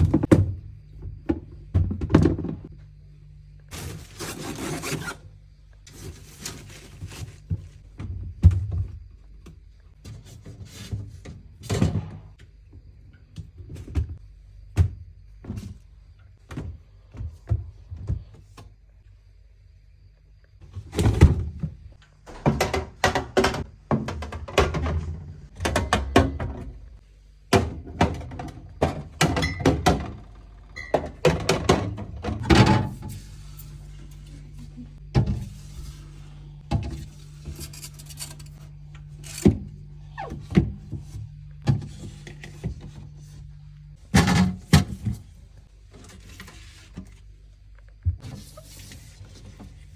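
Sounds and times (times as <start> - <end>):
household items clunking and clicking: 22.2 - 26.8, 30.8 - 33.2
steady low hum: 31.9 - 49.9.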